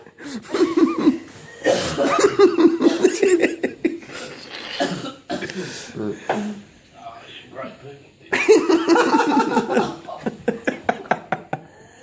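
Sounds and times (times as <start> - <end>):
person coughing: 0.4 - 3.7, 4.7 - 5.7.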